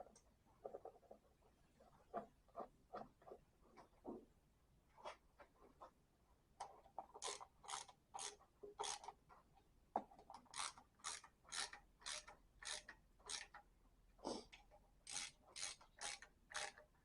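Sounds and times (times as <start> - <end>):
ratchet wrench clicking: 7.2 - 9.1, 10.5 - 13.6, 15.1 - 16.8.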